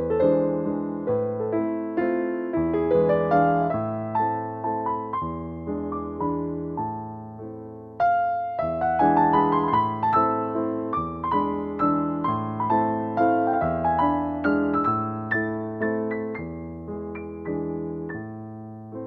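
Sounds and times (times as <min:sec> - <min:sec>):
gentle piano music: 0:00.0 - 0:19.0.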